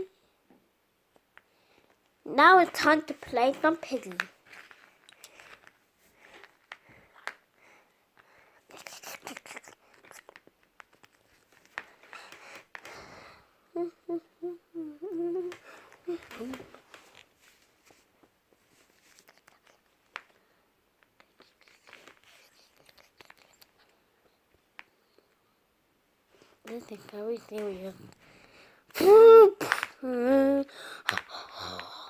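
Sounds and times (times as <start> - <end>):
person humming a tune: 13.8 - 16.6, 29.0 - 31.8.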